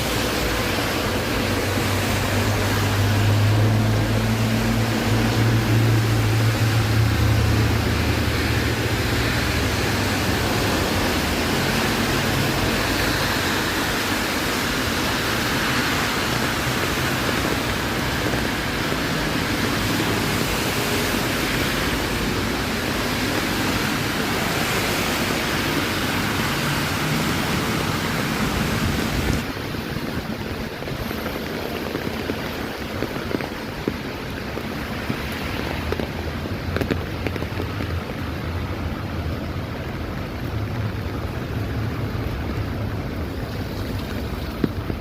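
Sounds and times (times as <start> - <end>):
low vehicle hum: 0.0 - 45.0
rain on wet street: 0.0 - 45.0.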